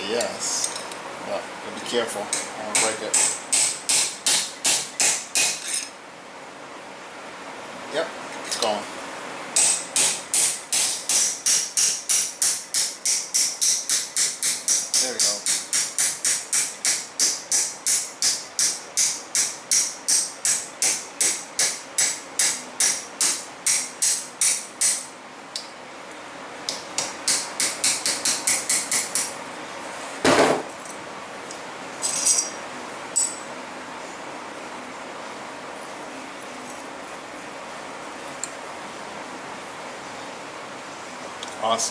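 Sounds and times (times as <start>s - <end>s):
hammer tapping on steel: 2.3s - 5.9s, 9.6s - 25.0s.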